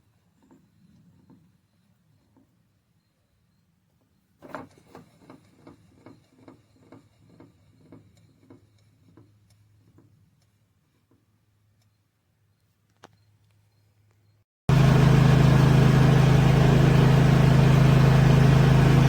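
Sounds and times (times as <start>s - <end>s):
evenly spaced ticks: 5.1s - 11.2s, 11.8s - 12.0s.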